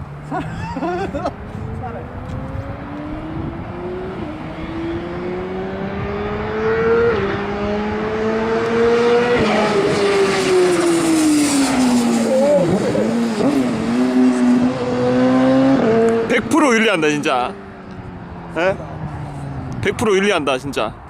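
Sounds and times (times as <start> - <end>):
motorcycle engine accelerating: 0.9 - 16.4.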